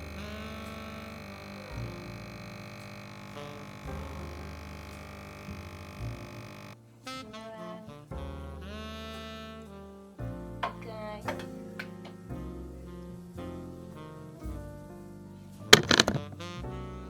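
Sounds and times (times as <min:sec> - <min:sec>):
low bass line: 0:00.0 - 0:06.5.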